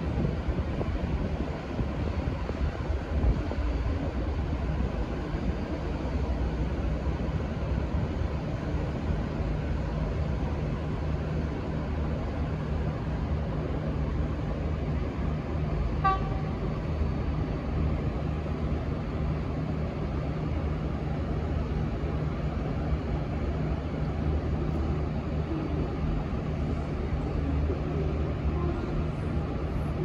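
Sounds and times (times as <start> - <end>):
locomotive engine rumbling: 0.0 - 30.0.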